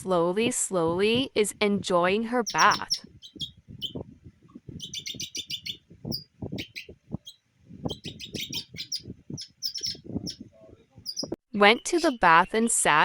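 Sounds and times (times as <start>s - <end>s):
parrot chirping: 2.4s - 4.0s, 4.7s - 10.4s, 11.0s - 12.7s.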